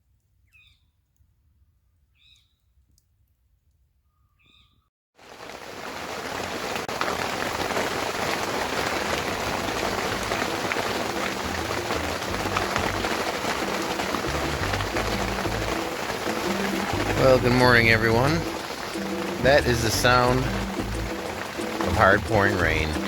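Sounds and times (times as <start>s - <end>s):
hard rain on a tarp: 5.2s - 23.0s.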